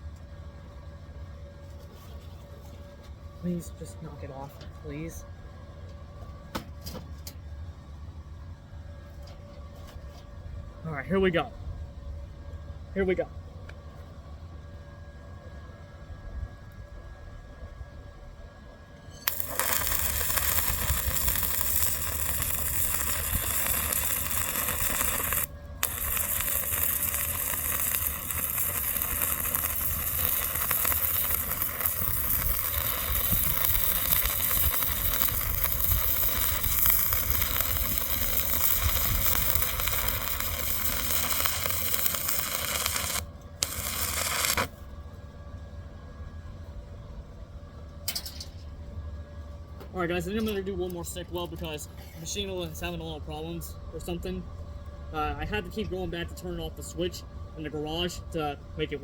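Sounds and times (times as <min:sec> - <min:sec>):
welding arc crackling: 0:19.2 - 0:44.8.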